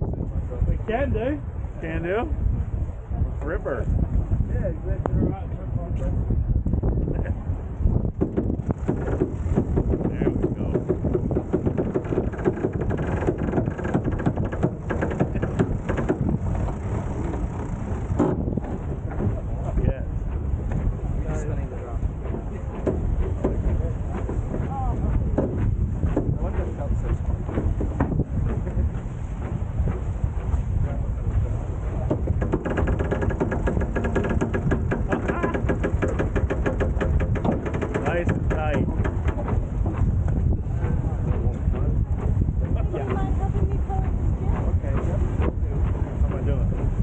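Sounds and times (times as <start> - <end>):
wind buffeting microphone: 0.0 - 47.0
winch pawls clicking: 8.7 - 19.4, 32.1 - 40.4
winch ratcheting clicks: 32.4 - 39.4.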